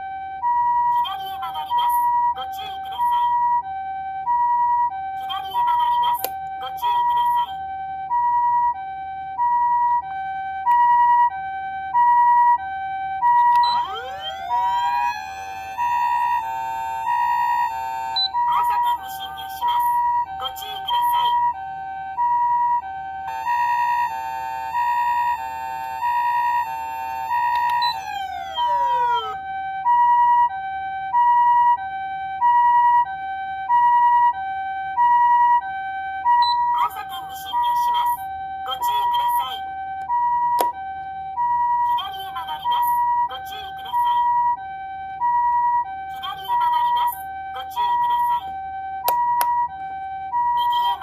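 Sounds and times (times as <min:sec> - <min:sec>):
two-tone ambulance siren: 0:00.0 - 0:51.0
rising siren sweep: 0:07.7 - 0:36.5.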